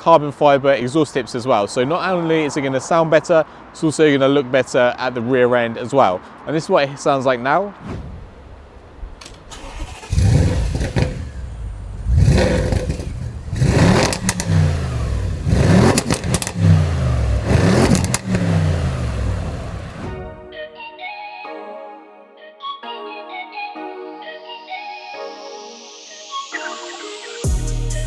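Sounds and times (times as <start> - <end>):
car engine revving: 7.8 - 20.2.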